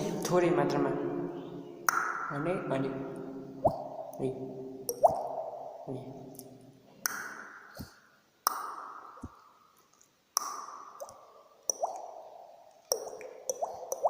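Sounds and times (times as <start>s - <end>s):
beatboxed water-drop clicks: 1.8s - 2.3s, 3.6s - 4.2s, 4.9s - 5.6s, 6.4s - 9.5s, 10.4s - 14.0s.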